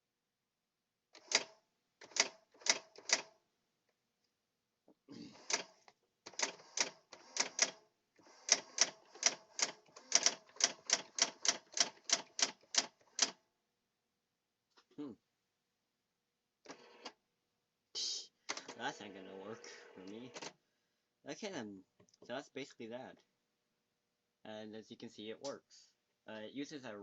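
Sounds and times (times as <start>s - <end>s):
electronic typewriter clacking: 6.3s - 7.8s, 8.4s - 13.4s.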